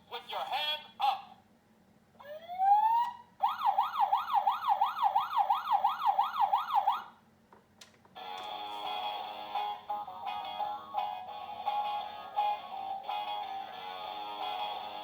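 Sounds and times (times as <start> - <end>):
toy electronic police siren: 2.2 - 7.1
toy electronic music: 8.2 - 15.0.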